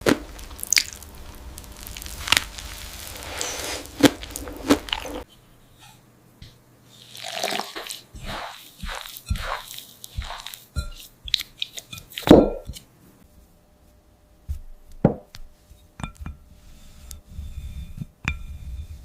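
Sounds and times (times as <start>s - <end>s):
steady hiss: 0.0s - 13.9s.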